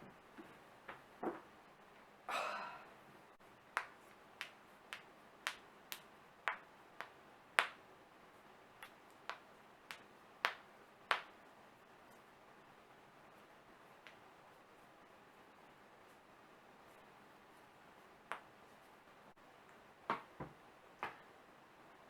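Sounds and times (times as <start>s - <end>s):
knuckles cracking: 3.8s - 7.8s.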